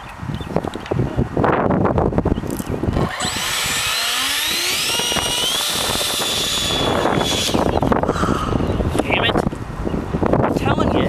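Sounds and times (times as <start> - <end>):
electric motor propeller whine: 2.9 - 8.6.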